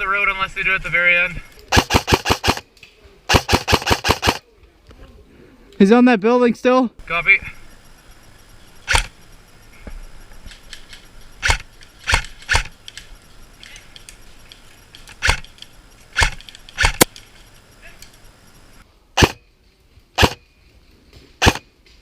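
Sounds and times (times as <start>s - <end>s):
airsoft rifle firing single shots: 1.7s - 2.7s, 3.3s - 4.4s, 19.2s - 19.4s, 20.2s - 20.4s, 21.4s - 21.7s.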